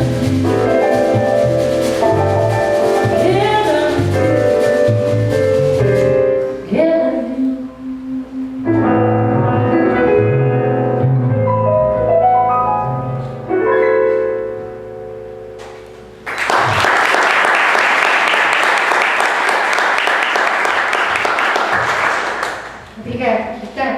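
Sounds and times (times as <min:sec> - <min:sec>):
jazz song on piano and bass: 0:00.0 - 0:16.3
audience applause: 0:16.2 - 0:22.8.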